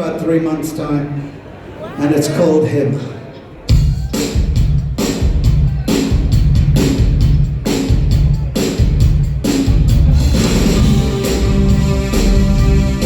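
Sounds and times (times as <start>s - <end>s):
rock drum beat: 3.7s - 13.0s
sustained guitar chords: 10.0s - 13.0s.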